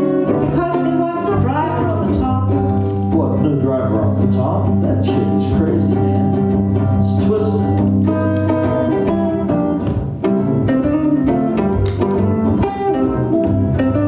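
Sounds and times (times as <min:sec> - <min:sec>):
person singing: 0:00.0 - 0:09.2
bass notes: 0:00.0 - 0:14.0
plucked guitar chords: 0:00.0 - 0:14.0.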